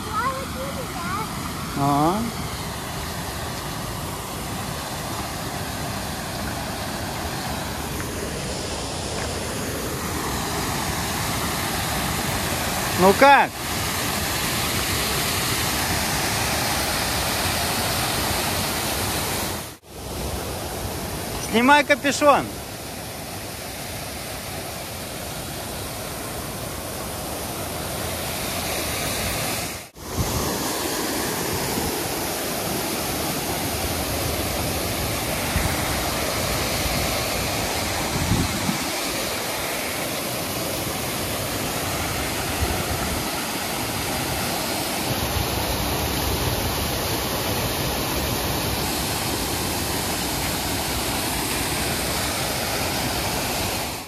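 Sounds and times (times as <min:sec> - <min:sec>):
water rushing over waterfall: 0:00.0 - 0:54.0.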